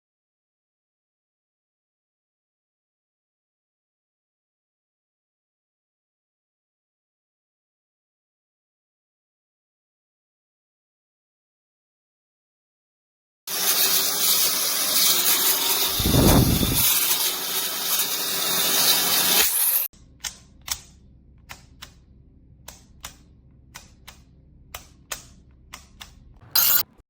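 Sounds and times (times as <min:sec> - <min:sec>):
hair dryer blowing: 0:13.5 - 0:19.8
air buffeting microphone: 0:15.9 - 0:16.9.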